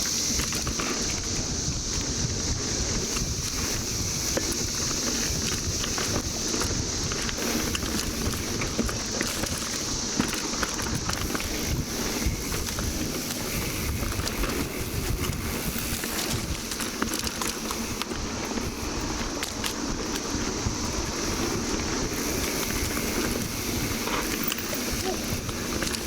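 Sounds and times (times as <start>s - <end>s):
bike clicks and rattles: 0.0s - 26.0s
bike tyres rumbling on dirt: 0.0s - 26.0s
cicadas droning: 0.0s - 26.0s.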